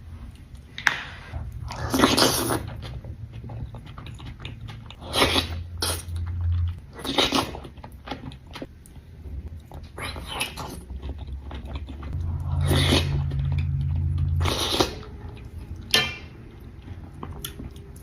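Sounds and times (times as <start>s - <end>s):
person chewing and biting: 9.5s - 15.5s.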